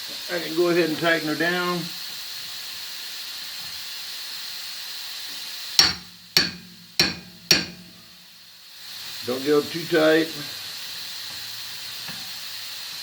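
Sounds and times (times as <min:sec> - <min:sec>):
steady hiss: 0:00.0 - 0:13.0
hammer striking steel: 0:05.8 - 0:08.3.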